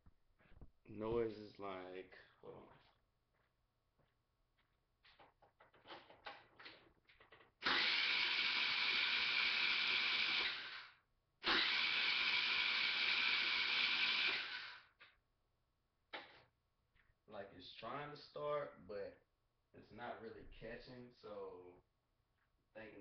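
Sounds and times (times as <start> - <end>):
starter cranking engine: 7.6 - 10.9, 11.5 - 14.8.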